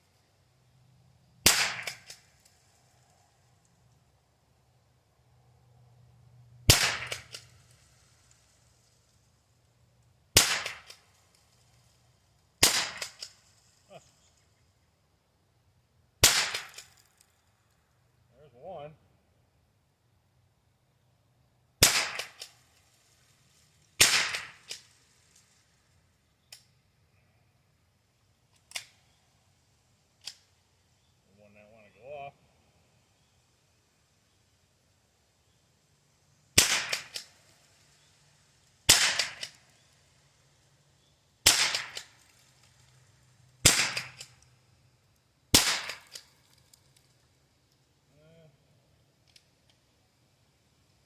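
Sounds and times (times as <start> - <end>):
rifle shots: 1.4 - 2.3, 6.7 - 7.5, 10.4 - 11.1, 12.6 - 13.4, 16.2 - 17.0, 21.8 - 22.6, 24.0 - 24.8, 36.6 - 37.4, 38.9 - 39.6, 41.4 - 42.2, 43.6 - 44.4, 45.5 - 46.2.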